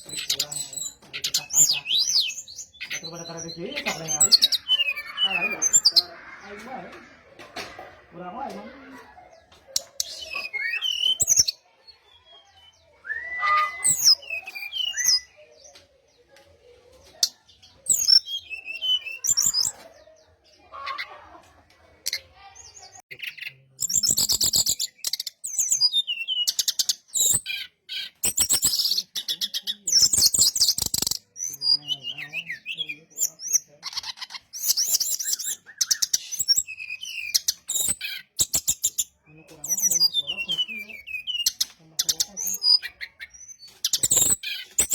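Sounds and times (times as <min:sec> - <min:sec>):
bird rapid high chattering: 0:00.0 - 0:07.3, 0:08.0 - 0:11.6, 0:23.1 - 0:44.9
bird whistles and chirps: 0:10.0 - 0:11.6, 0:12.3 - 0:15.4, 0:34.6 - 0:39.1, 0:39.7 - 0:44.9.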